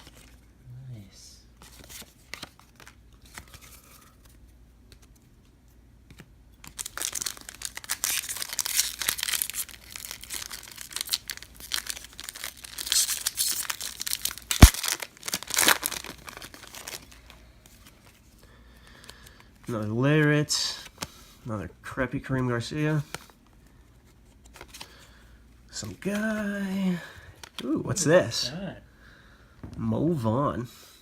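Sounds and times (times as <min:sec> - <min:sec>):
card wrapper crinkling and tearing: 0:06.6 - 0:18.2.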